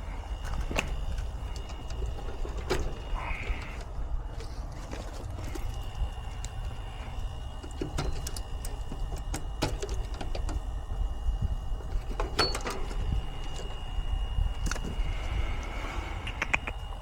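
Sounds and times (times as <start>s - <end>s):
hand tools clicking on metal parts: 0.0s - 11.0s, 11.7s - 13.9s
steady low rumble: 0.0s - 17.0s.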